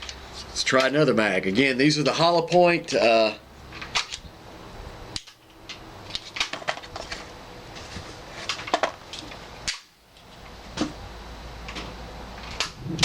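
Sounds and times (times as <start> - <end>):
pistol being handled and loaded: 3.8 - 4.2, 5.2 - 7.3.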